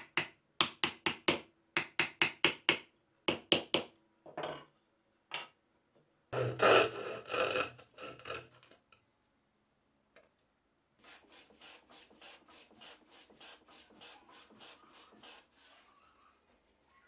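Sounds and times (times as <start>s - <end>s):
wood sanding strokes: 11.0s - 16.4s.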